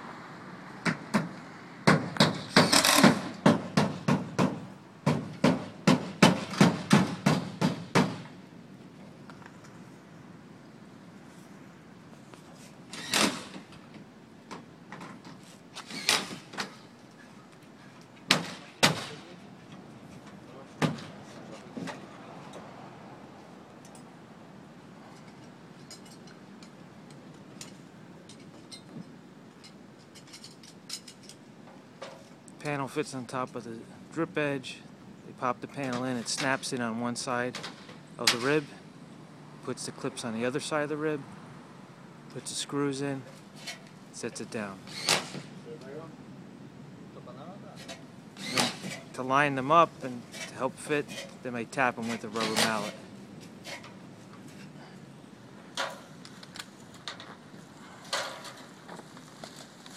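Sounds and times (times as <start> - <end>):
steady background hiss: 0.0 - 59.9
hammer blows on roof: 0.8 - 8.3
metallic clicks from roofing panels: 37.5 - 38.7, 55.7 - 59.6.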